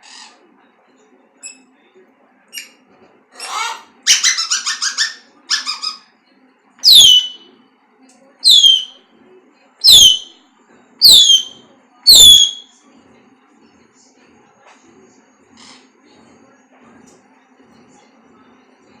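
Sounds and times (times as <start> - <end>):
parrot chattering: 3.4 - 6.0, 6.8 - 7.4, 8.4 - 9.0, 9.8 - 10.3, 11.0 - 12.7
parrot whistled squawks: 3.4 - 6.0, 6.8 - 7.4, 8.4 - 9.0, 9.8 - 10.4, 11.0 - 12.7.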